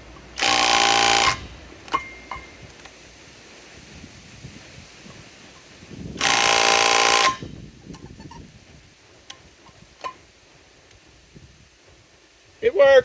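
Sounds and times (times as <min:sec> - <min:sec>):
impact wrench hammering: 0:00.4 - 0:02.5.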